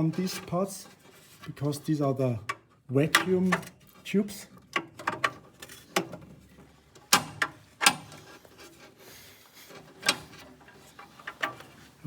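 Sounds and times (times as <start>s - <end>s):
clicks and knocks of metal parts: 2.4s - 8.7s, 9.8s - 11.8s.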